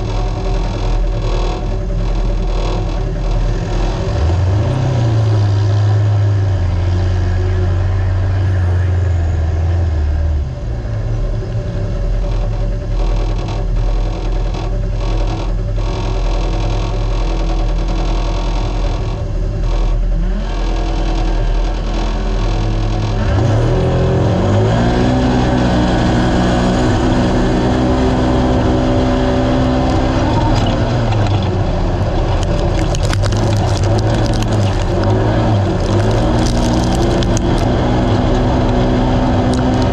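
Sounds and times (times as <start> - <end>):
wind and terrain noise: 0.0 - 39.9
engine revving hard: 13.0 - 39.9.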